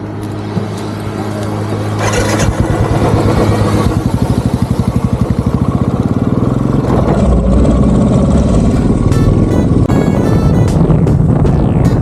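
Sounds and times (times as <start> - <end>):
music: 8.7 - 12.0.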